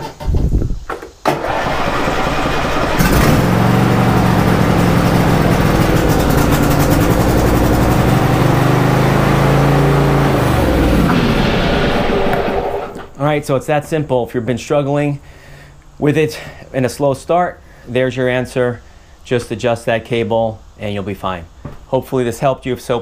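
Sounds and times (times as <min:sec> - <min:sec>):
starter cranking: 0:01.3 - 0:04.2
small engine running: 0:01.4 - 0:13.0.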